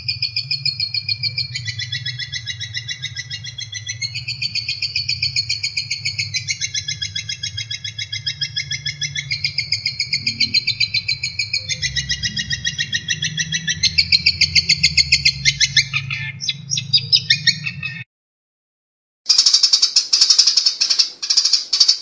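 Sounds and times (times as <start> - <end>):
songbird chirping: 0.0 - 18.1, 19.3 - 22.0.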